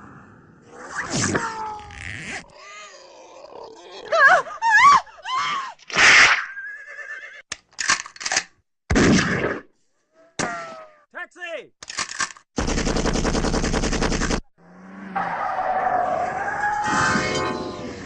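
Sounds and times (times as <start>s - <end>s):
sharp clicks: 11.8s - 12.5s.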